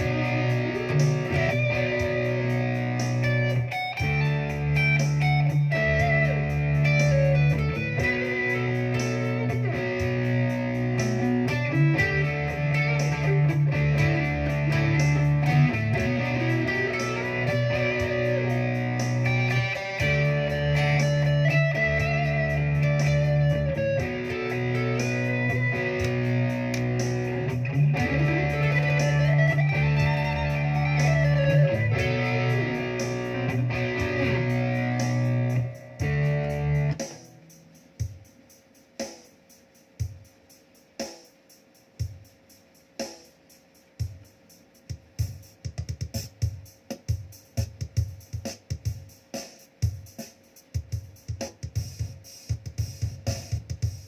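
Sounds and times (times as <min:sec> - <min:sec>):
electric guitar chords with effects: 0:00.0 - 0:38.2.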